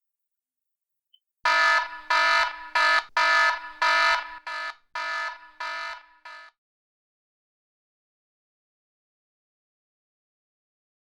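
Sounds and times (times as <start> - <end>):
alarm clock buzzing beeps: 1.5 - 6.5.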